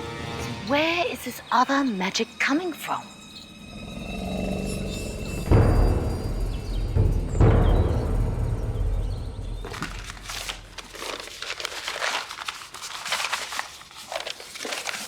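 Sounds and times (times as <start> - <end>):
low rumble: 3.6 - 10.2
dense irregular crackling and rustling: 9.6 - 15.0.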